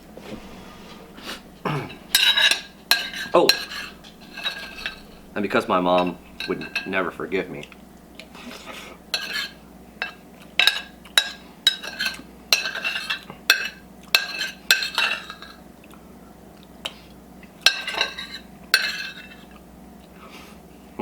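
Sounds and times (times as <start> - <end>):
fork clinking against plate: 1.2 - 7.0, 7.6 - 15.6.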